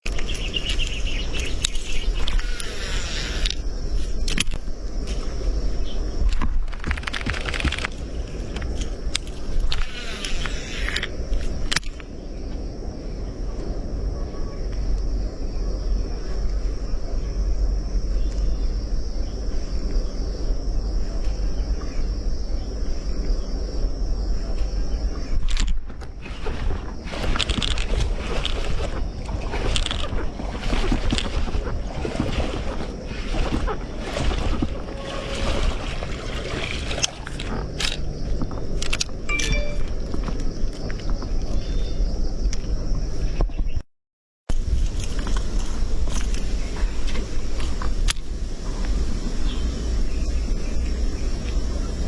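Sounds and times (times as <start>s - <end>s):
wind rumbling on microphone: 0.0s - 43.8s, 44.5s - 52.0s
high insect drone: 0.1s - 43.4s, 44.5s - 52.0s
fishing gear being handled: 6.4s - 11.5s, 25.5s - 38.0s.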